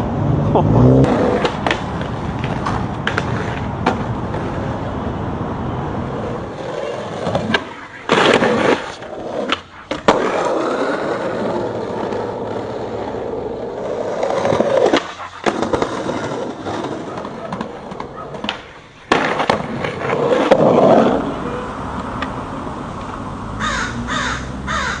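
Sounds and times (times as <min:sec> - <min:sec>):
skateboard wheels rolling: 0:00.0 - 0:25.0
skateboard clacks: 0:01.0 - 0:04.9, 0:06.0 - 0:23.2
crows cawing: 0:23.6 - 0:25.0.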